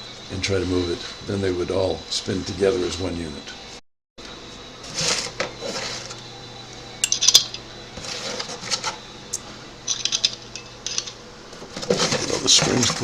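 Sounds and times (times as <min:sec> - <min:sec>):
small metal parts clinking: 0:07.0 - 0:07.6, 0:09.9 - 0:11.2.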